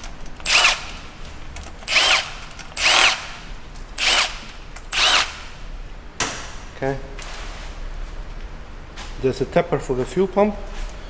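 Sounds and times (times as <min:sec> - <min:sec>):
electric drill motor whine: 0:00.4 - 0:05.6.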